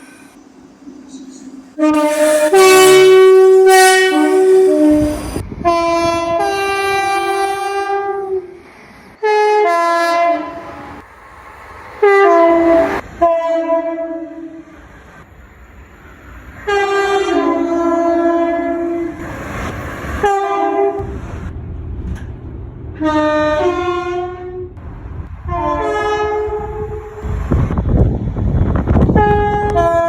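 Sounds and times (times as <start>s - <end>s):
train rumble: 0.0s - 30.0s
two-tone train horn blasts: 1.8s - 8.6s, 9.2s - 11.0s, 12.0s - 14.7s, 16.6s - 19.2s, 20.2s - 21.2s, 23.0s - 24.8s, 25.4s - 27.4s, 29.0s - 30.0s.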